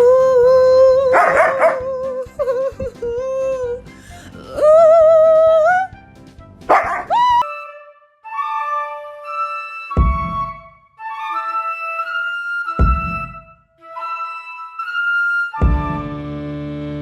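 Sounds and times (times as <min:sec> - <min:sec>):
music: 0:00.0 - 0:17.0
dog howling: 0:01.0 - 0:01.9, 0:06.7 - 0:07.4.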